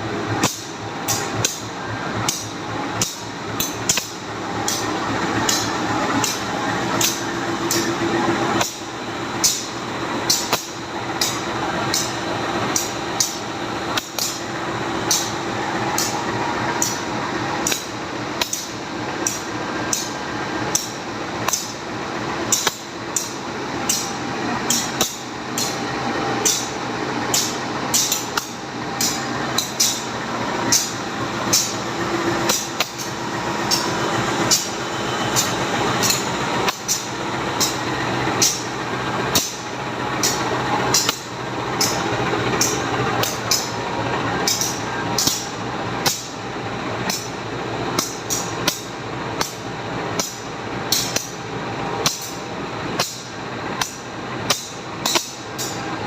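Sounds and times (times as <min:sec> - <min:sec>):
diesel locomotive humming: 0:00.0 - 0:56.0
sharp hissing clicks: 0:09.4 - 0:14.4, 0:27.3 - 0:30.1, 0:35.3 - 0:38.6, 0:40.2 - 0:42.0.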